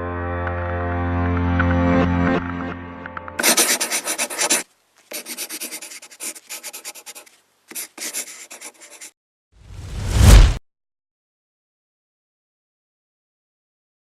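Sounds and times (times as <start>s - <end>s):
scratchy rubbing strokes: 3.4s - 9.2s
whoosh into deep boom: 9.7s - 10.6s.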